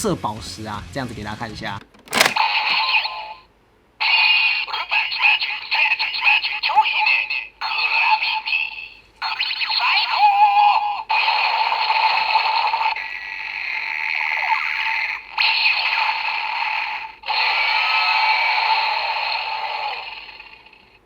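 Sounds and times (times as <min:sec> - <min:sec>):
electronic voice from toy speaker: 0:02.1 - 0:20.7.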